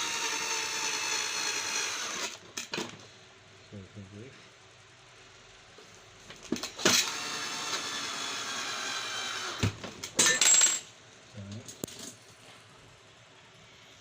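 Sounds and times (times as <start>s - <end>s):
small motor whirring: 0.0s - 2.4s, 6.8s - 9.6s.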